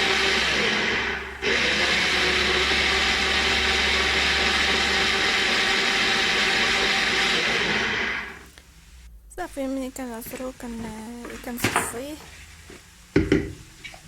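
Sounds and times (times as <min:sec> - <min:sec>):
electric blender running: 0:00.0 - 0:08.5.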